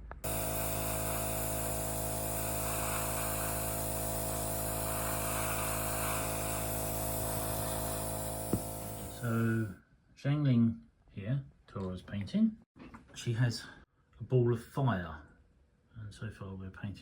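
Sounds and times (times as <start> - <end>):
air hissing: 0.0 - 9.7
airbrush compressor humming: 0.0 - 9.7.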